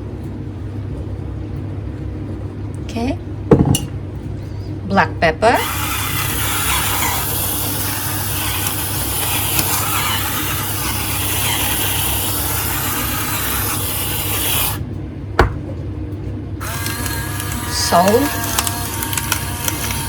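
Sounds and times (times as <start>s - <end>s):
knock: 3.5s - 3.9s, 15.4s - 15.7s
pepper mill grinding: 5.6s - 14.8s, 16.6s - 20.0s.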